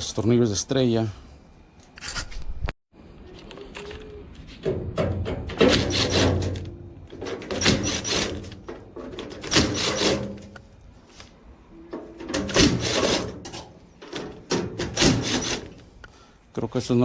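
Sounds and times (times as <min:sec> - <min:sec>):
tools knocking on sheet metal: 0:04.6 - 0:06.6.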